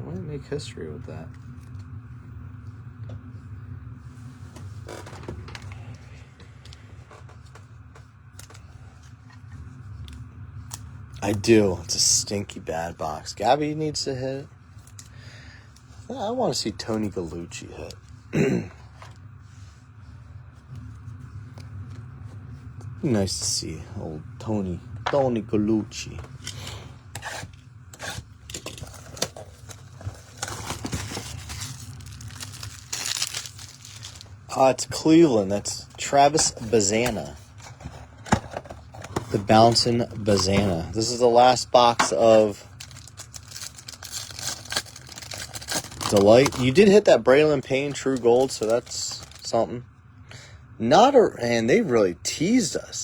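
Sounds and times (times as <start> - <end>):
steady low hum: 0.0 - 53.0
cards clicking and rustling: 26.5 - 34.6, 36.1 - 41.2, 41.8 - 46.8, 47.8 - 49.5
foil wrapper crinkling: 28.0 - 49.5.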